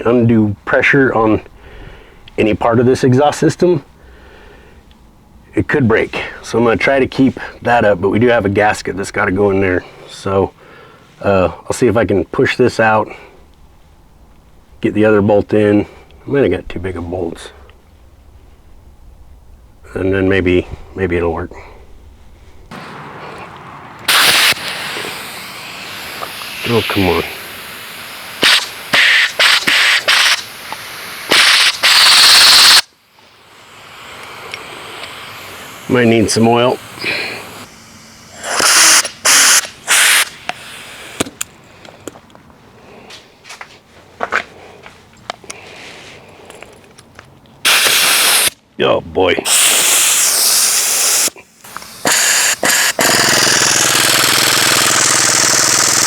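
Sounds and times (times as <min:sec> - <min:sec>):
aerosol can spraying: 0:24.1 - 0:41.3, 0:47.7 - 0:48.6, 0:49.4 - 0:56.0
impact wrench hammering: 0:28.4 - 0:32.9, 0:36.8 - 0:40.4, 0:51.7 - 0:56.0.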